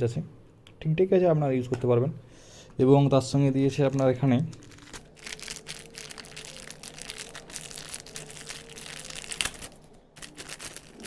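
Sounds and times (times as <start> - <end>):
packaging crinkling and rustling: 3.8 - 11.0.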